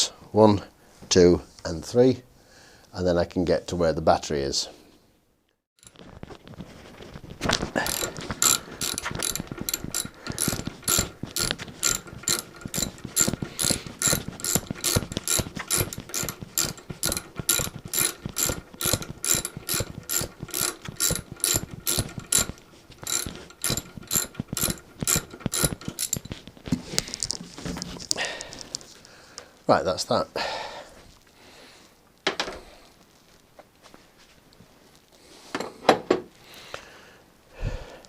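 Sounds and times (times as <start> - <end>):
ratchet wrench clicking: 7.8 - 26.4.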